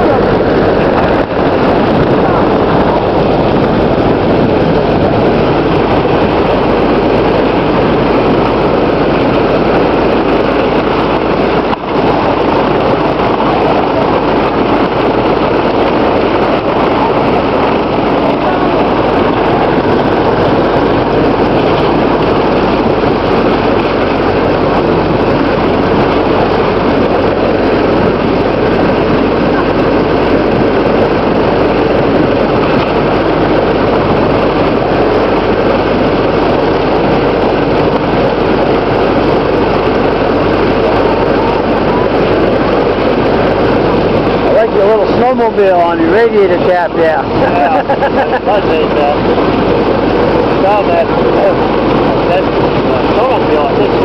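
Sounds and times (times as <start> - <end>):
snowmobile engine running: 0.0 - 54.0.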